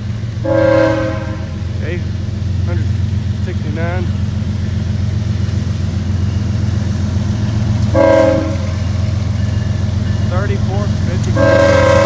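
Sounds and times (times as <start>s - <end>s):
diesel locomotive engine drone: 0.0s - 12.0s
locomotive air horn blast: 0.4s - 1.7s, 7.9s - 8.9s, 11.2s - 12.0s.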